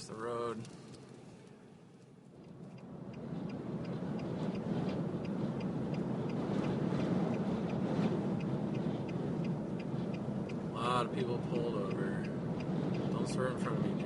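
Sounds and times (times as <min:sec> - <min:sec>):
road noise: 0:00.0 - 0:14.0
hazard flasher ticking: 0:02.4 - 0:13.4
wind rushing: 0:02.8 - 0:14.0.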